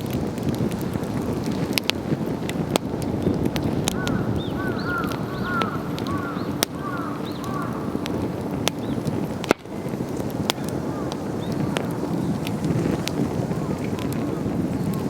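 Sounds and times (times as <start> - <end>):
campfire crackling and popping: 0.0 - 15.0
small bird chirping: 4.1 - 7.8.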